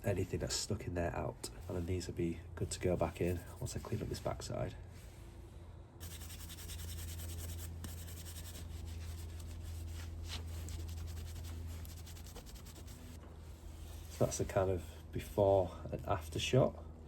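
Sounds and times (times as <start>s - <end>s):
steady low hum: 0.0s - 17.0s
brake pad being scraped: 6.0s - 13.2s.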